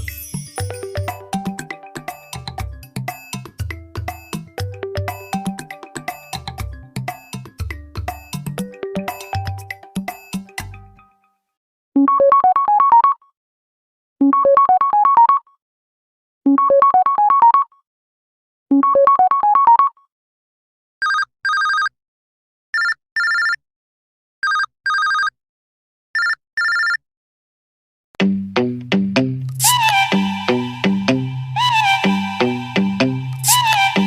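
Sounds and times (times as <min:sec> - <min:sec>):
rising electronic notes ringtone: 0:00.0 - 0:02.7, 0:29.6 - 0:34.0.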